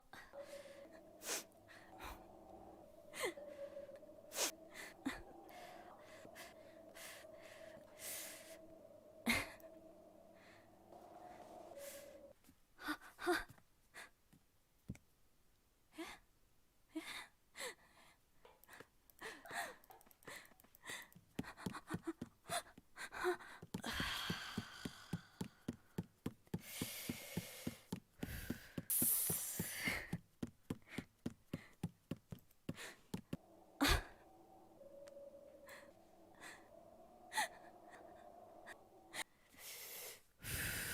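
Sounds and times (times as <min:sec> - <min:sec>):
person breathing: 0:00.0 - 0:12.3, 0:17.6 - 0:31.9, 0:32.7 - 0:40.9
faint steady hum: 0:00.0 - 0:12.4, 0:32.8 - 0:40.9.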